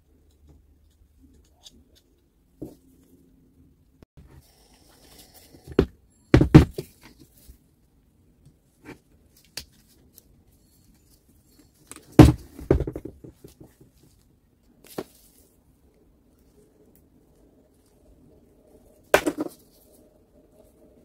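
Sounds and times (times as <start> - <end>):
tools knocking on workbench: 12.2 - 13.2.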